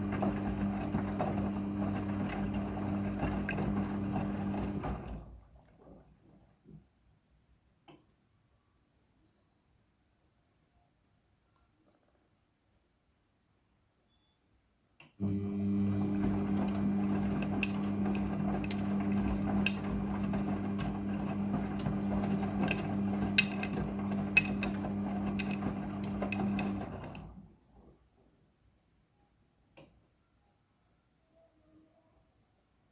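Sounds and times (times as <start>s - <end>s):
washing machine drum humming: 0.0s - 5.3s, 15.2s - 27.4s.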